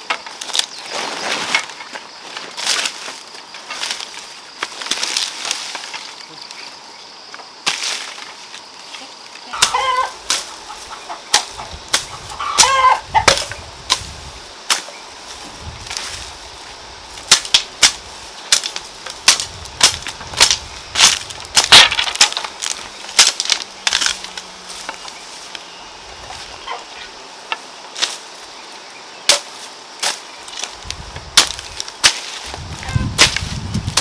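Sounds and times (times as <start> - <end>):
chicken clucking: 9.0 - 13.6, 26.6 - 27.1, 32.8 - 33.2.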